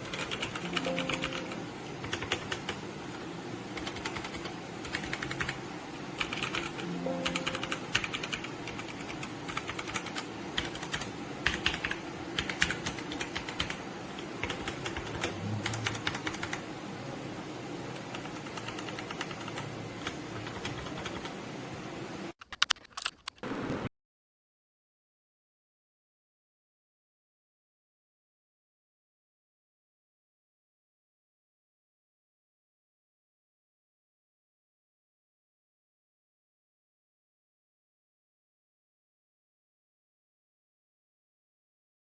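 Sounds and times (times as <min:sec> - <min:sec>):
mechanical keyboard typing: 0:00.0 - 0:02.8, 0:03.8 - 0:05.6, 0:06.2 - 0:16.6, 0:18.0 - 0:21.4, 0:22.4 - 0:23.4.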